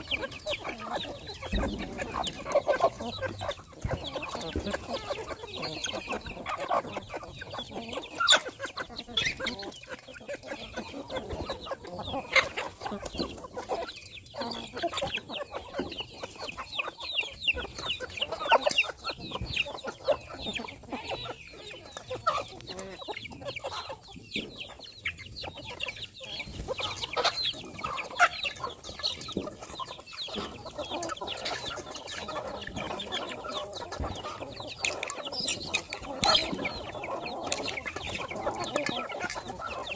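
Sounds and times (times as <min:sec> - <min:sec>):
flock of chickens clucking: 0:00.0 - 0:39.9.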